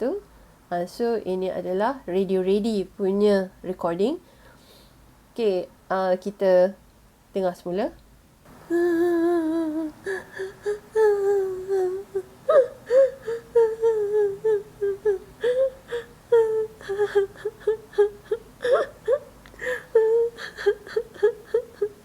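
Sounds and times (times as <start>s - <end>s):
woman crying and sobbing: 8.6s - 22.0s.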